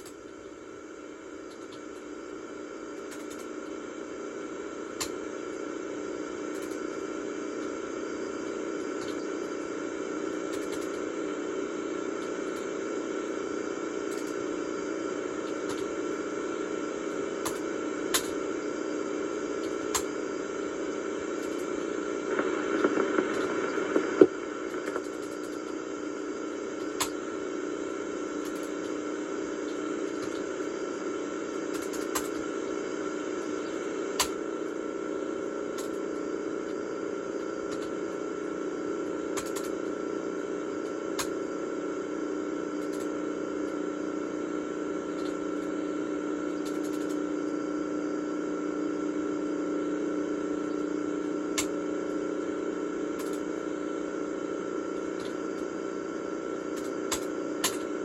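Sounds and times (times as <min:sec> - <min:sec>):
tape hum and hiss: 0:00.0 - 0:58.0
sharp clicks: 0:10.5 - 0:11.0, 0:21.4 - 0:25.8, 0:46.6 - 0:47.2.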